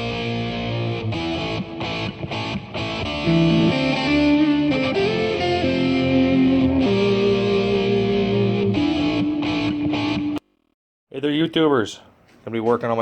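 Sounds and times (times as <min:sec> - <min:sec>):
distorted electric guitar chords: 0:00.0 - 0:10.4.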